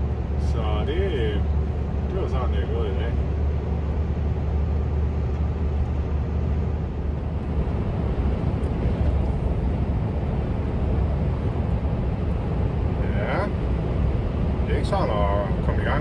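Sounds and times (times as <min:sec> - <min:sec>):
diesel truck engine drone: 0:00.0 - 0:16.0
road noise: 0:00.0 - 0:16.0.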